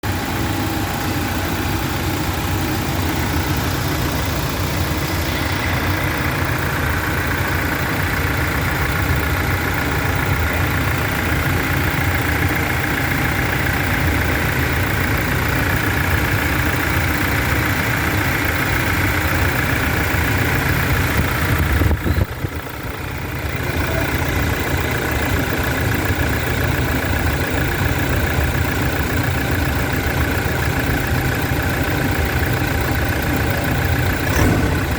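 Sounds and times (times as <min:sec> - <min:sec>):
diesel engine idling: 0:00.0 - 0:34.9.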